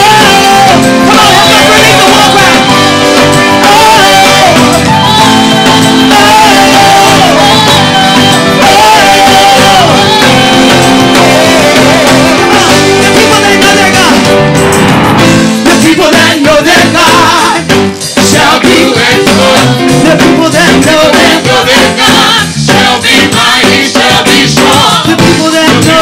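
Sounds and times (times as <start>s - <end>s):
worship band music: 0.0s - 26.0s.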